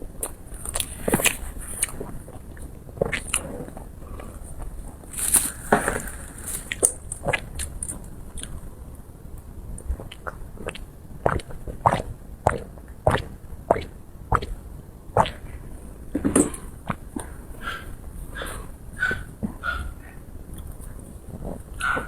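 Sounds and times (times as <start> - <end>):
person biting and chewing food: 10.0 - 14.6.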